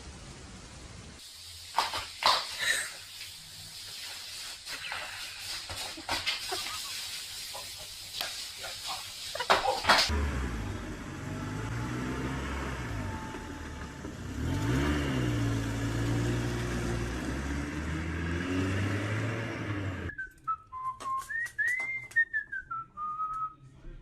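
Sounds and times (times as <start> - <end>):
whistled gliding notes: 20.1 - 23.6.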